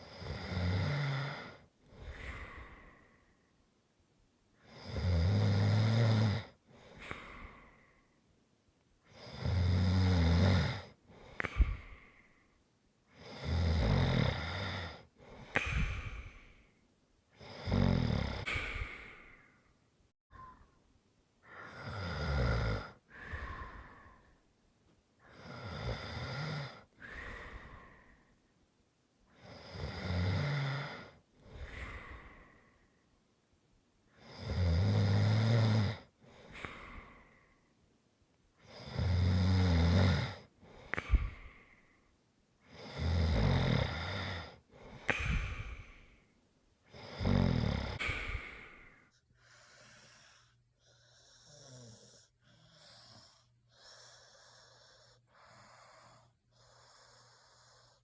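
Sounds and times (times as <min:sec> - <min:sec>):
person snoring: 0:00.0 - 0:03.2, 0:04.6 - 0:07.8, 0:09.1 - 0:12.1, 0:13.2 - 0:16.7, 0:17.4 - 0:19.6, 0:21.5 - 0:24.4, 0:25.3 - 0:28.2, 0:29.4 - 0:32.7, 0:34.2 - 0:37.4, 0:38.6 - 0:41.8, 0:42.7 - 0:46.2, 0:46.9 - 0:58.0.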